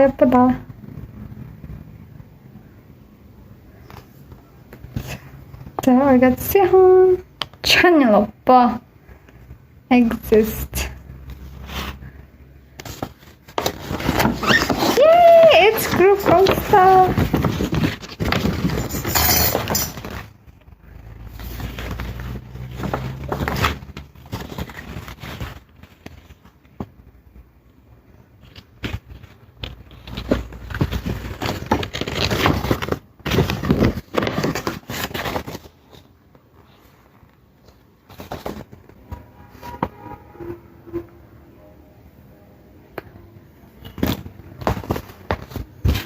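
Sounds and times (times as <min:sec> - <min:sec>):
paper and plastic rustling: 0:03.7 - 0:07.7, 0:09.0 - 0:27.4, 0:28.1 - 0:40.2, 0:43.8 - 0:46.0.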